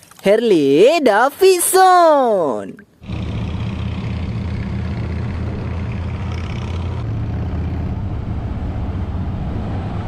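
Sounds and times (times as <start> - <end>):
motor rumbling: 3.0 - 10.0.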